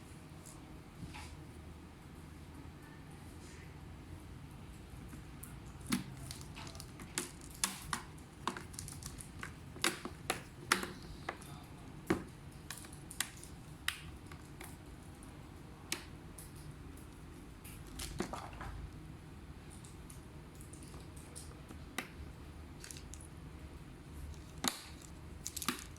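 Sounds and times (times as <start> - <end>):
plastic clicks and taps: 9.4 - 11.5.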